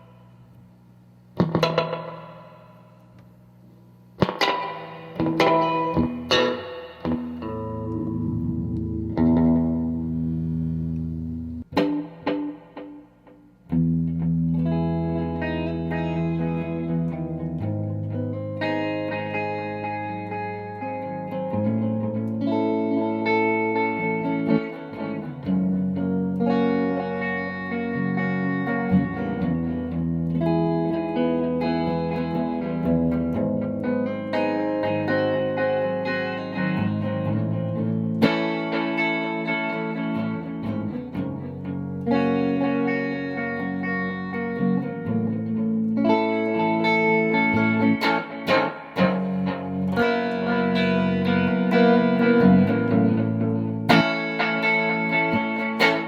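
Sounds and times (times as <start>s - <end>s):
electric guitar chords with tape delay: 1.3s - 56.0s.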